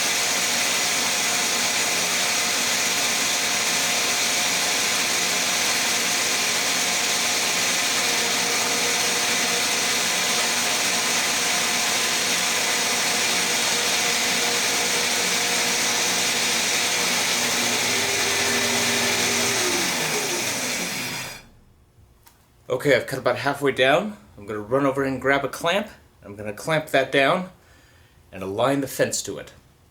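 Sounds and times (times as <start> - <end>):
bandsaw running: 0.0 - 21.6
motor spinning down: 0.0 - 21.6.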